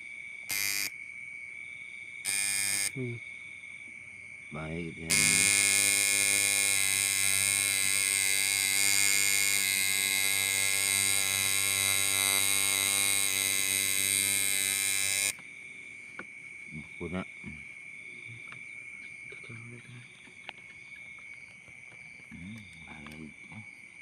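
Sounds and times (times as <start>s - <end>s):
tattoo machine buzzing: 0.5s - 0.9s, 2.3s - 3.0s, 5.1s - 15.4s.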